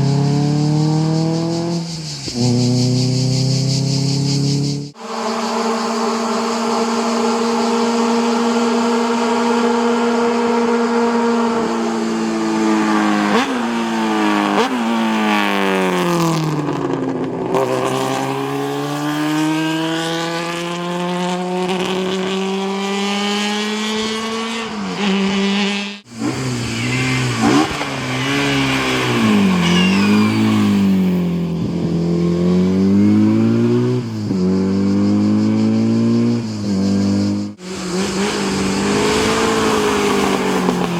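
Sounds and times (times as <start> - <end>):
racing car engine changing gears: 0.0 - 40.9.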